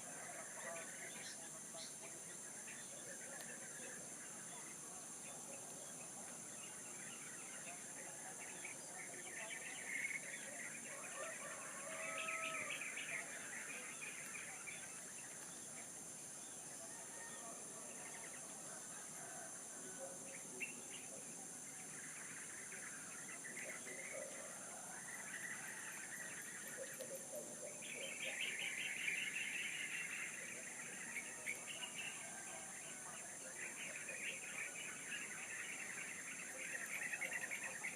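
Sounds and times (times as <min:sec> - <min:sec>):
birds chirping: 0:00.0 - 0:37.9.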